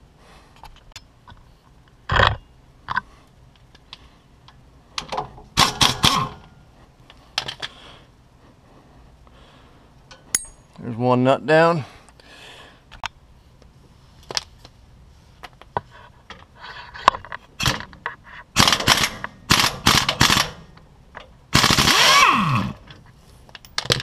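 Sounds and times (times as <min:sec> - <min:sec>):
pneumatic impact wrench hammering: 0:05.0 - 0:06.5, 0:18.5 - 0:20.8, 0:21.5 - 0:22.8.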